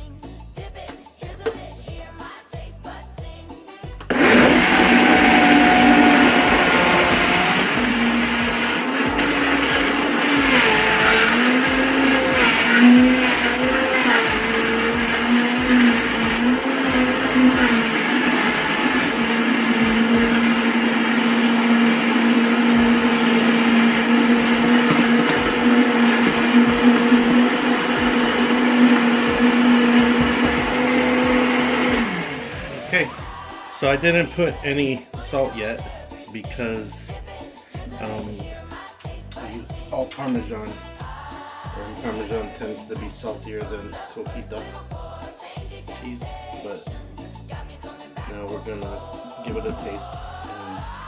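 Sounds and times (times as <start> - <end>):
countertop blender running: 4.1 - 33.3.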